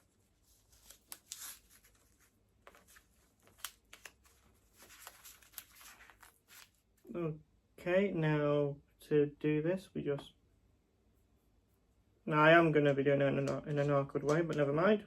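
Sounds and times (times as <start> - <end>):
wrapping rustling: 0.0 - 7.1.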